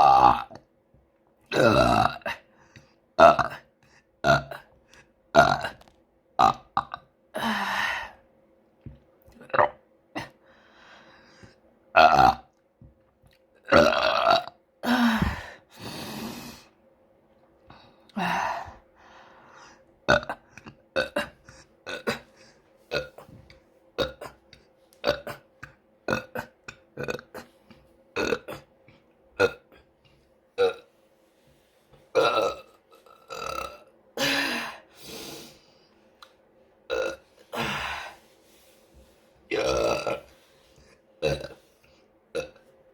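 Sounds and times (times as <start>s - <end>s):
person burping: 0.0s - 0.6s, 1.5s - 2.5s, 3.2s - 7.6s, 9.3s - 10.4s, 12.0s - 12.5s, 13.6s - 15.5s, 20.1s - 22.3s, 22.9s - 23.4s, 24.0s - 24.4s, 25.0s - 25.5s, 26.1s - 27.5s, 28.2s - 28.7s, 29.4s - 29.8s, 30.6s - 30.9s, 32.1s - 34.6s, 36.9s - 38.2s, 39.5s - 40.4s, 41.2s - 41.6s, 42.3s - 42.6s.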